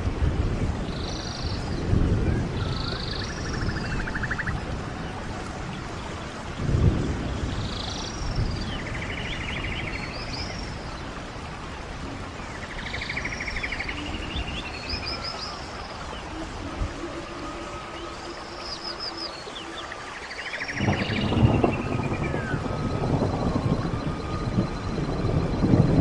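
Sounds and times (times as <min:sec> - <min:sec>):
stream water running: 0:00.0 - 0:26.0
songbird trilling and chirping: 0:02.6 - 0:04.6.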